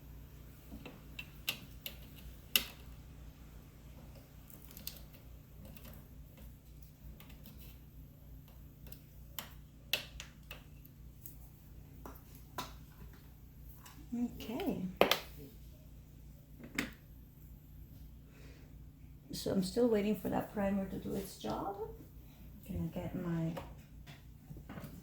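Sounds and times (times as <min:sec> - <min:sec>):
low steady hum: 0:00.0 - 0:25.0
small items clicking on table: 0:00.7 - 0:03.0, 0:08.4 - 0:11.0.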